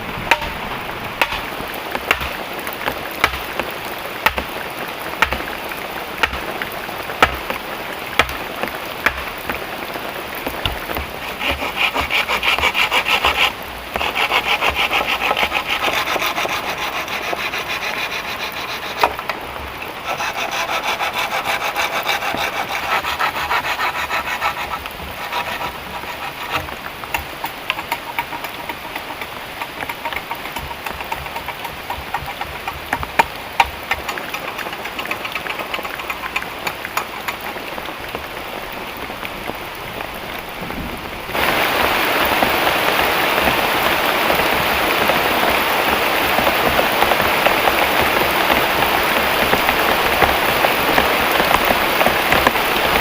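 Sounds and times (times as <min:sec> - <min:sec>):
hand saw rasping through wood: 0:01.2 - 0:04.5, 0:05.2 - 0:05.5, 0:06.2 - 0:06.6, 0:07.2 - 0:07.6, 0:08.2 - 0:09.6, 0:10.5 - 0:19.3, 0:20.0 - 0:37.4
sharp clicks and taps: 0:26.5 - 0:38.2.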